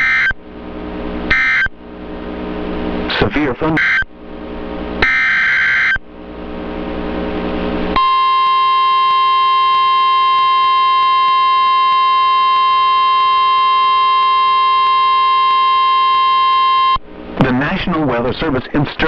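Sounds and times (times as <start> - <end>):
loud steady alarm tone: 0.0 - 0.4, 1.3 - 1.8, 3.1 - 4.1, 5.0 - 6.0, 8.0 - 17.0.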